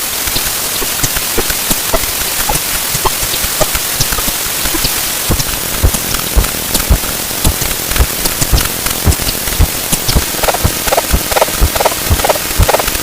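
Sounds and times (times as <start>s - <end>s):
steady hiss: 0.0s - 13.0s
irregular clicks: 0.2s - 13.0s
low thumps: 5.3s - 12.8s.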